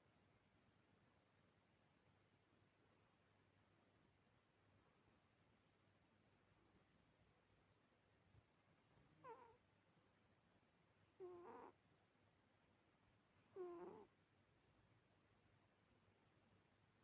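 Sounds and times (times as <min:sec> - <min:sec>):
cat meowing: 0:09.2 - 0:09.6, 0:11.2 - 0:11.7, 0:13.6 - 0:14.1.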